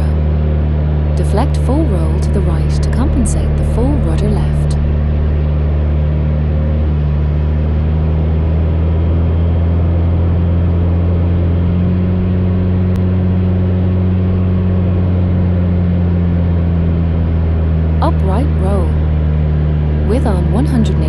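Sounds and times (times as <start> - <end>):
propeller plane engine droning: 0.0 - 21.0.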